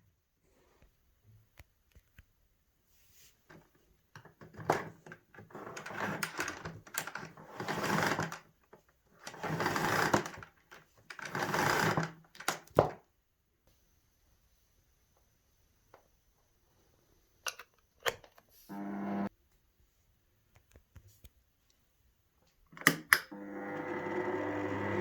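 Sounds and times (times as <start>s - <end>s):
plastic parts clattering: 3.5s - 13.0s.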